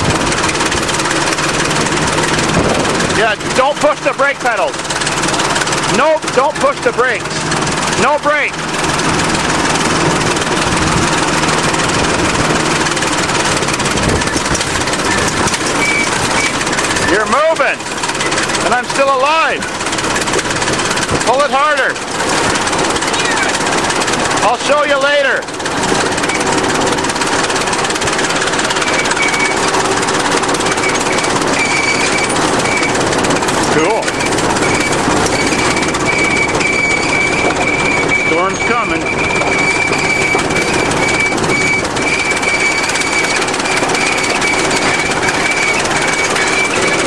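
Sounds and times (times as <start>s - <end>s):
bulldozer diesel engine: 0.0s - 47.0s
fast mechanical clatter: 0.0s - 47.0s
short high squeaks: 12.3s - 19.8s, 26.0s - 26.8s, 27.5s - 47.0s.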